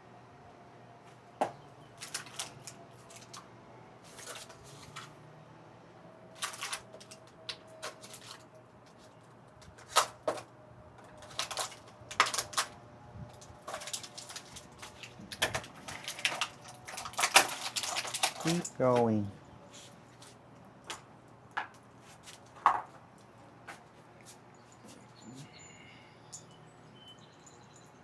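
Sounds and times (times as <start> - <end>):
metal parts and tools rattling: 6.3 - 9.2, 11.0 - 12.7, 13.4 - 19.2.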